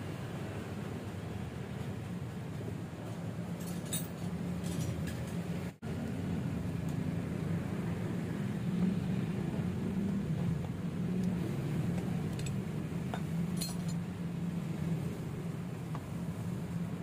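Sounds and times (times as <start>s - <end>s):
low mechanical hum: 0.0s - 17.0s
light metallic clinks: 3.6s - 5.4s, 12.3s - 14.1s.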